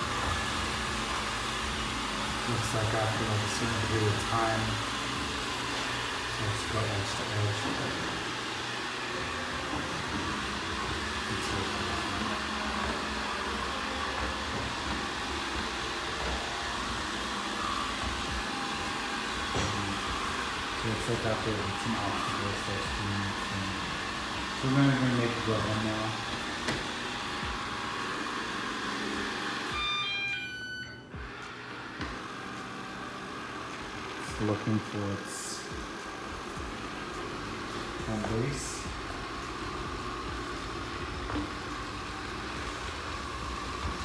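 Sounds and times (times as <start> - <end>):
robot vacuum whirring: 0.0 - 44.0
electronic beep jingle: 29.7 - 31.2.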